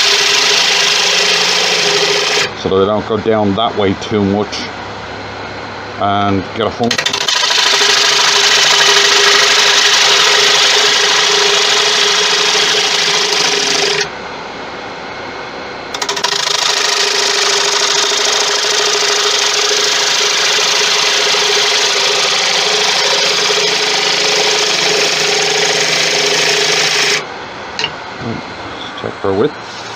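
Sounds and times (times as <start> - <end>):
gouge cutting wood on a lathe: 0.0 - 2.5, 6.9 - 14.1, 15.9 - 27.2
lathe humming: 0.0 - 5.0, 6.3 - 14.2, 15.9 - 29.1.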